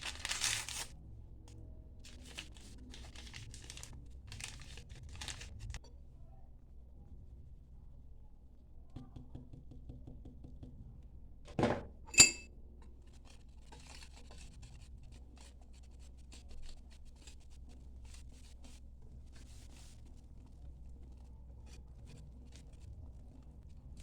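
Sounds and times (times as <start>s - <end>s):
ringing clink: 12.1s - 12.5s.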